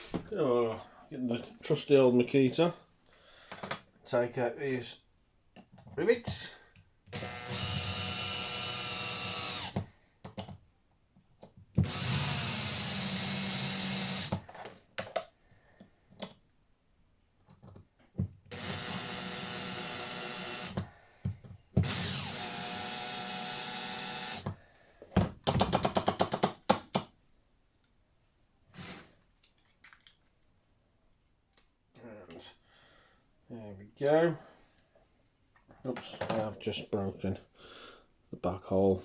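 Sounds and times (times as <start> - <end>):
small power drill whining: 7.1 - 9.9, 11.8 - 14.7, 18.5 - 24.6.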